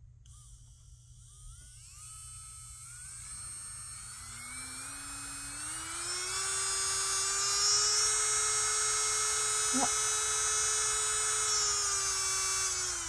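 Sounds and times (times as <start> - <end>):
nail drill motor whining: 0.0 - 13.0.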